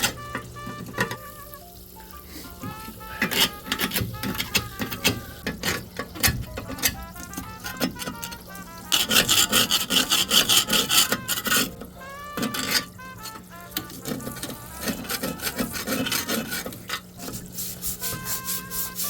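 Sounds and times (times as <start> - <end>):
light background music: 0.0 - 19.0
scrubbing strokes: 2.2 - 5.4, 7.1 - 19.0.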